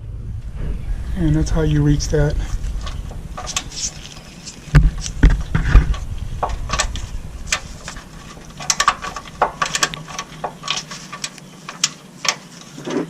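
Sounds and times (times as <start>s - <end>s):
dull knocks: 4.7s - 10.8s
hand tools clicking on metal: 5.9s - 12.6s.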